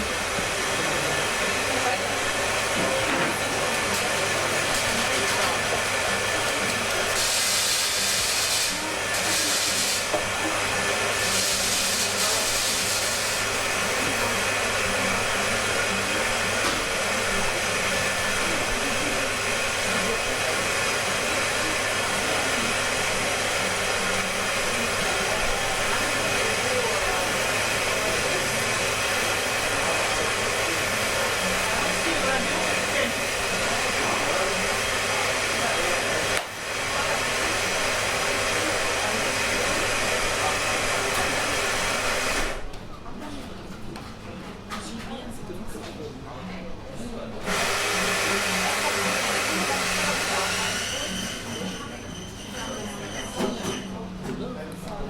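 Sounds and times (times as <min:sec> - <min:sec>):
coffee shop room noise: 0:00.0 - 0:55.0
short bursts of high hiss: 0:07.2 - 0:10.1.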